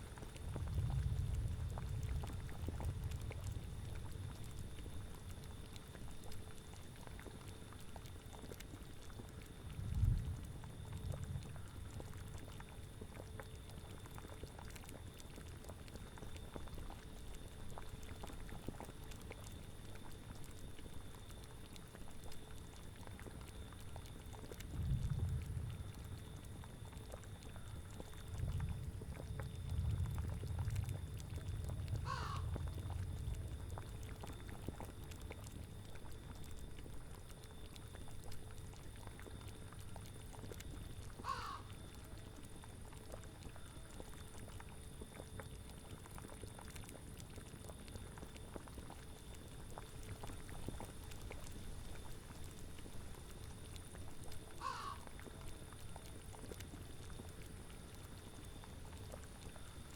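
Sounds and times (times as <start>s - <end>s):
cauldron bubbling: 0.0s - 41.5s, 42.2s - 59.9s
short animal calls: 32.0s - 32.6s, 41.2s - 41.7s, 54.6s - 55.1s.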